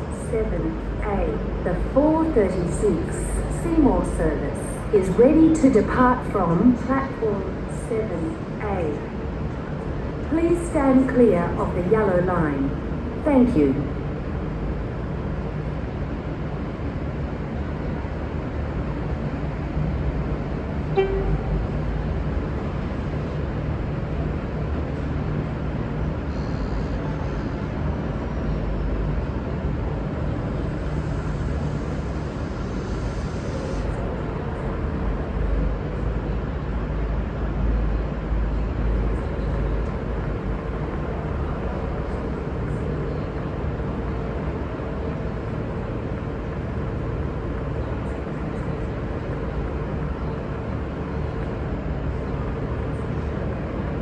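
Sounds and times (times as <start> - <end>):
diesel railcar engine drone: 0.0 - 54.0
train horn toot: 20.9 - 22.0.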